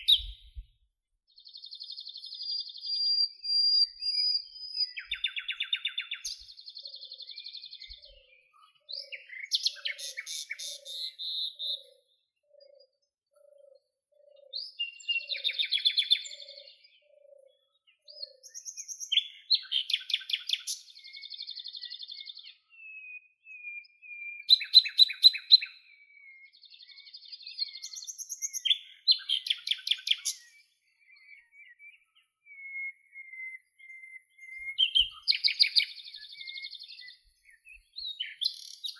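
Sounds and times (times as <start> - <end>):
songbird trills and chirps: 0.0 - 38.9.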